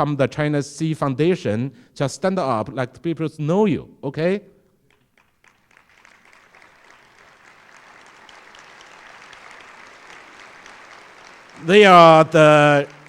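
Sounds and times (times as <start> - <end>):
audience applauding: 4.9 - 13.0.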